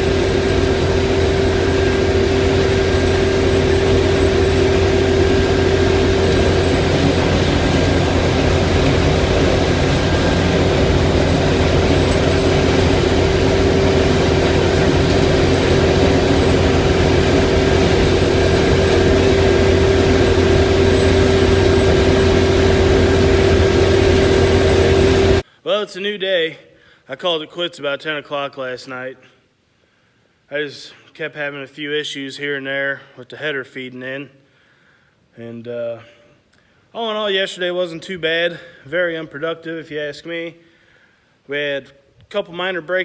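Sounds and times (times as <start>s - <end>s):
combine harvester engine drone: 0.0s - 25.4s
steady machine whine: 0.0s - 25.4s.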